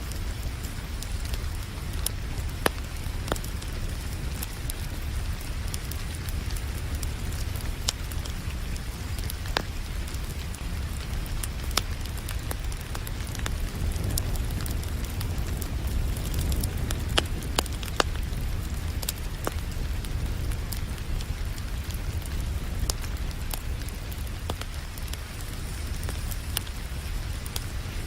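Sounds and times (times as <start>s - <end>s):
rain hissing: 0.0s - 28.0s
wood fire crackling and popping: 0.0s - 28.0s.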